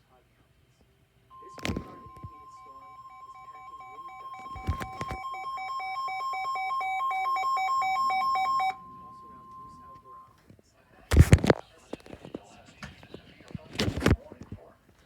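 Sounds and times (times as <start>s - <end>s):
buzzy electronic alarm beeping: 1.3s - 10.3s
steady high alert tone: 1.3s - 10.3s.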